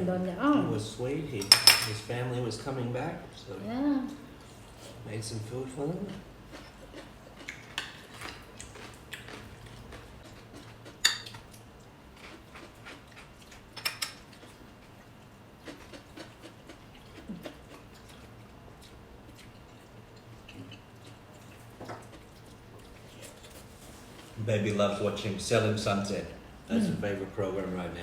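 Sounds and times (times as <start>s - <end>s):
cutlery clinking on plates: 1.4s - 2.0s.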